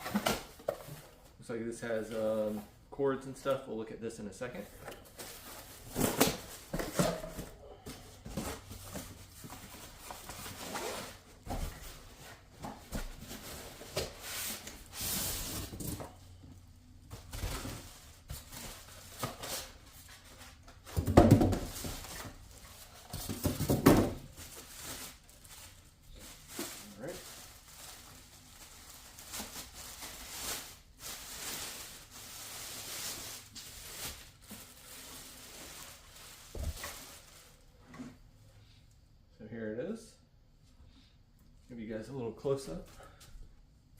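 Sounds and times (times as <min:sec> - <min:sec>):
cardboard rustling and scraping: 0:04.7 - 0:16.2.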